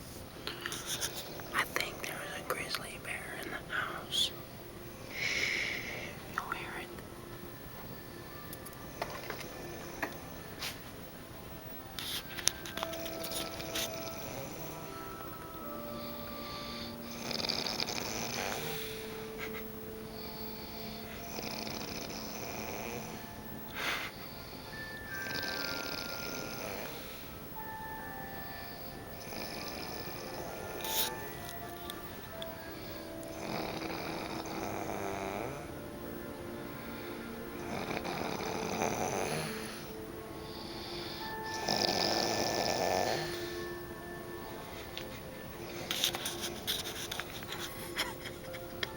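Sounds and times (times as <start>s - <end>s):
faint background music: 0.0s - 48.9s
woman snoring: 5.1s - 6.9s, 12.9s - 27.4s, 28.5s - 31.3s, 32.7s - 35.8s, 36.8s - 43.8s.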